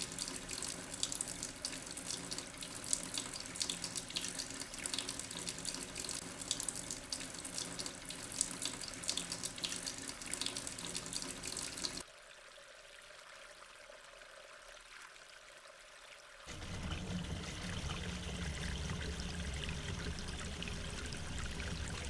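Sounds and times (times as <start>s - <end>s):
running water splashing: 0.0s - 12.0s, 16.5s - 22.0s.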